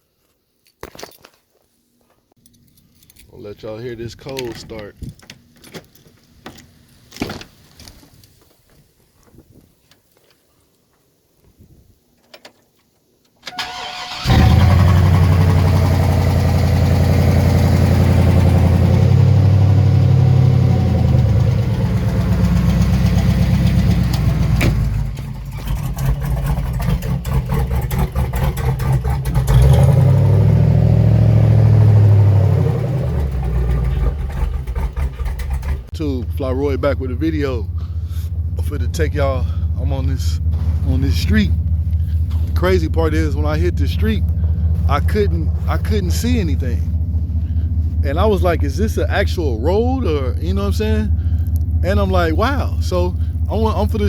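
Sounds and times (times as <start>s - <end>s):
truck engine starter cranking: 13.4s - 18.8s, 31.3s - 36.5s
truck engine running loudly: 14.2s - 54.0s.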